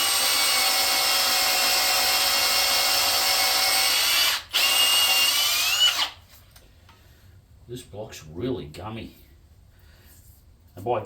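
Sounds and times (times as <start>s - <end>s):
cordless drill cutting metal: 0.0s - 6.2s.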